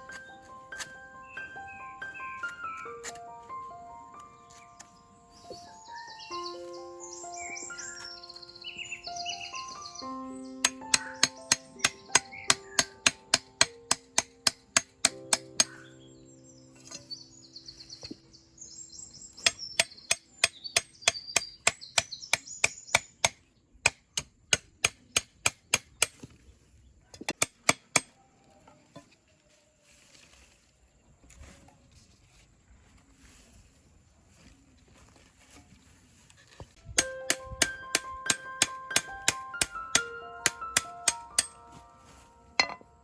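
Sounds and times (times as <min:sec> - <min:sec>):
soft background music: 0:00.0 - 0:19.9, 0:37.0 - 0:43.0
birds chirping: 0:00.0 - 0:24.2
rhythmic chopping knocks: 0:10.6 - 0:15.8, 0:37.0 - 0:41.6.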